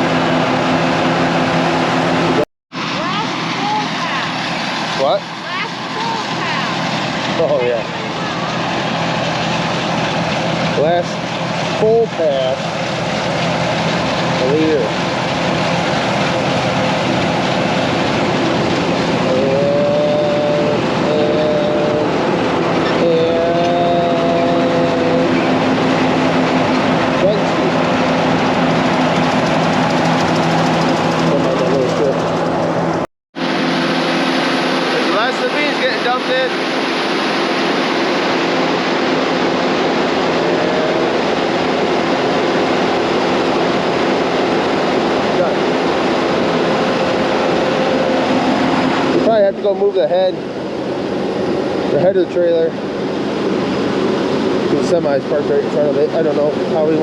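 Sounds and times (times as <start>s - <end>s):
combine harvester drone: 0.0s - 57.0s
whining tone: 0.0s - 57.0s.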